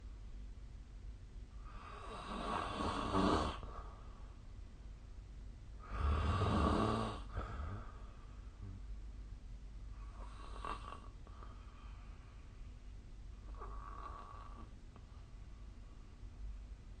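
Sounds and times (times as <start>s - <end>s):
person snoring: 1.6s - 3.7s, 5.8s - 8.0s.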